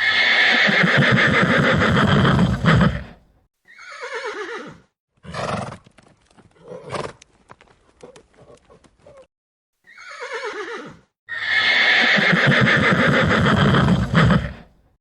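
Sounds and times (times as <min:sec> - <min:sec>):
horse neighing: 0:00.0 - 0:05.6, 0:09.9 - 0:14.7.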